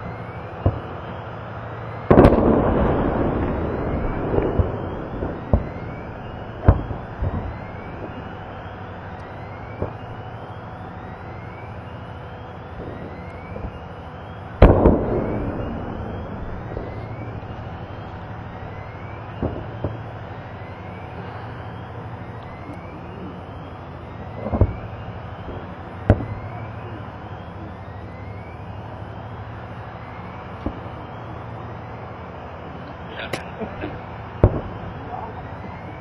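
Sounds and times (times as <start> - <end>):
loud blast with rumbling echo: 0.0 - 36.0
explosions: 2.0 - 10.3, 14.5 - 20.3, 24.2 - 26.9, 34.4 - 34.9.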